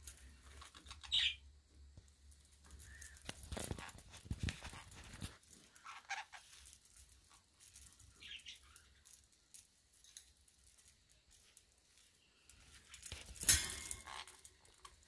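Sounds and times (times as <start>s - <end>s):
parrot chirping: 0.8s - 1.4s
toy clicks and rattles: 2.1s - 15.0s.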